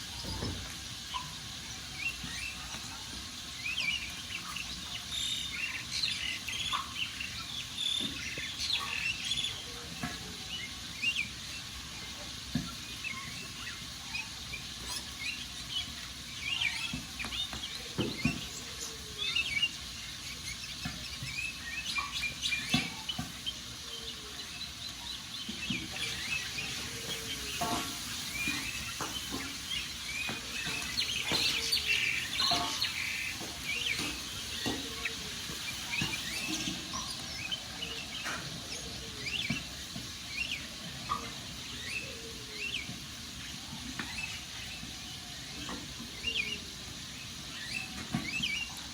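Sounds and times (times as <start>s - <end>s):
birds chirping: 0.0s - 48.9s.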